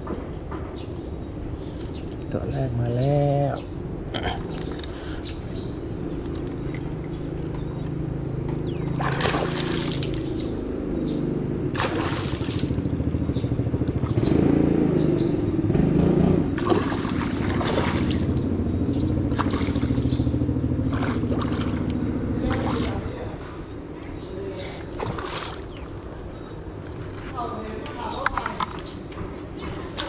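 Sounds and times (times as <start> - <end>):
low mechanical hum: 0.1 - 30.0
fish splashing water: 8.7 - 10.7, 11.7 - 13.1, 16.6 - 23.3, 24.8 - 26.0.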